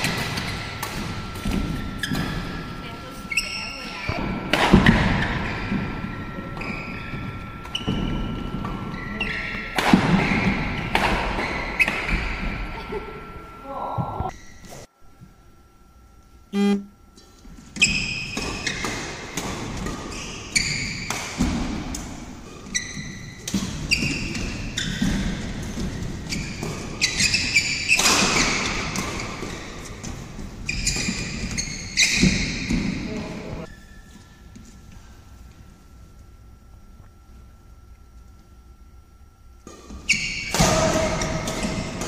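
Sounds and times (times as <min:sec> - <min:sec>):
rackets hitting shuttlecock: 0:00.0 - 0:02.6, 0:06.6 - 0:12.6, 0:39.6 - 0:42.0
shoes squeaking on court floor: 0:00.0 - 0:04.2, 0:04.8 - 0:13.3, 0:17.8 - 0:21.6, 0:22.4 - 0:35.1, 0:39.7 - 0:42.0.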